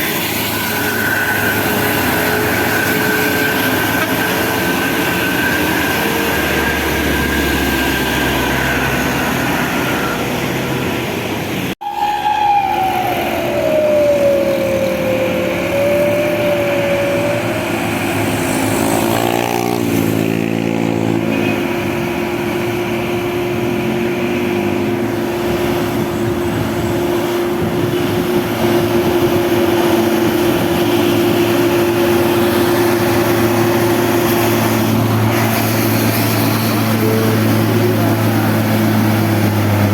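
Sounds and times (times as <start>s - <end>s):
engine whine: 0.0s - 39.9s
heavy traffic rumble: 0.0s - 39.9s
wavering cluster of tones: 11.8s - 19.2s, 31.2s - 39.5s.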